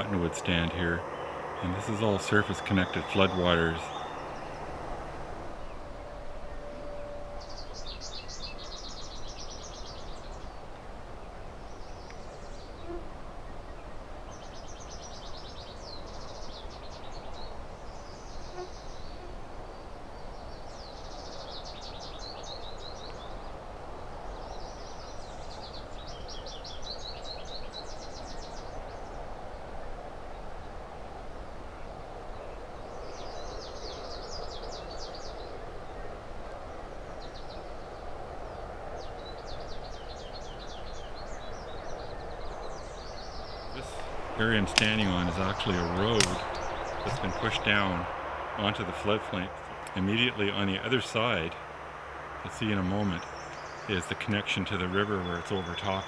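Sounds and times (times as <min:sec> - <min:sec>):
songbird trilling: 0:00.0 - 0:10.6, 0:39.0 - 0:51.5, 0:52.4 - 0:56.0
steady rushing background: 0:39.2 - 0:51.3.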